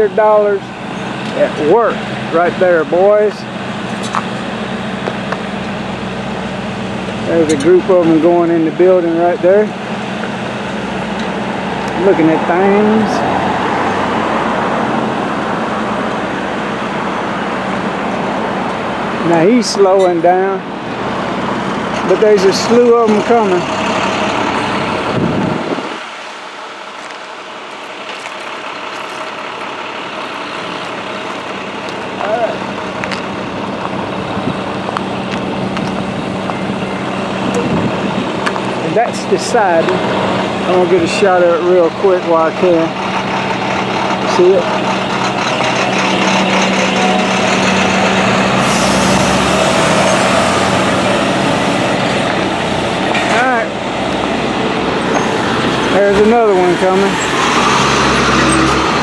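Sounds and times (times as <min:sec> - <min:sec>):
heavy road vehicle passing: 0:00.0 - 0:59.0
steady engine hum: 0:00.0 - 0:59.0
traffic noise: 0:00.0 - 0:59.0
vehicle driving past: 0:11.5 - 0:19.2, 0:42.9 - 0:59.0.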